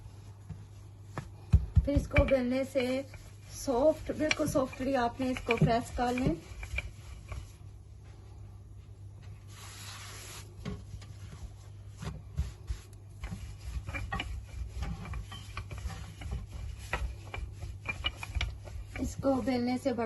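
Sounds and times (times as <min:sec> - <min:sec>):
rolling pin rubbing dough: 0:00.0 - 0:08.3, 0:09.4 - 0:20.0
rolling pin knocking on board: 0:01.4 - 0:02.5.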